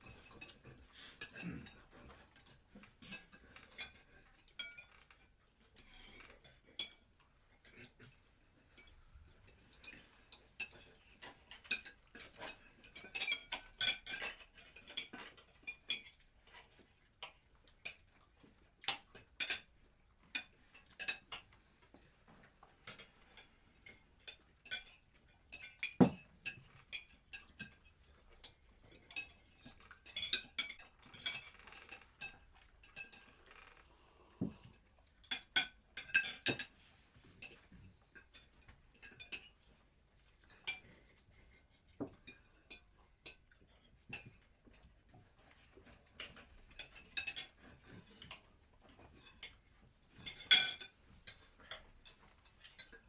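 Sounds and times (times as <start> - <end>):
cutlery clinking on dishes: 0.0 - 53.0.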